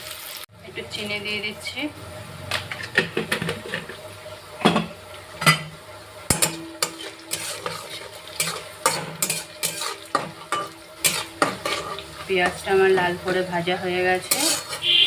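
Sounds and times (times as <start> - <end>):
onions sizzling: 0.0 - 15.0
spatula scraping a pan: 6.3 - 15.0.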